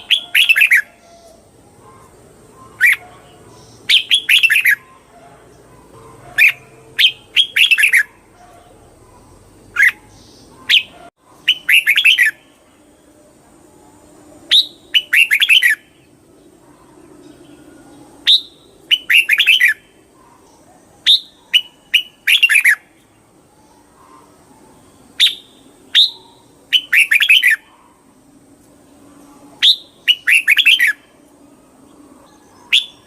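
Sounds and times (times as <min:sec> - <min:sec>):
bulbul singing: 0:00.0 - 0:13.1, 0:14.0 - 0:28.1, 0:28.9 - 0:33.0.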